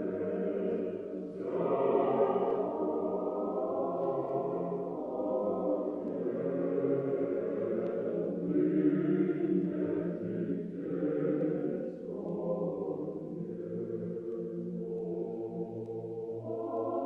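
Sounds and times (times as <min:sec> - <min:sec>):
choir chanting: 0:00.0 - 0:17.0.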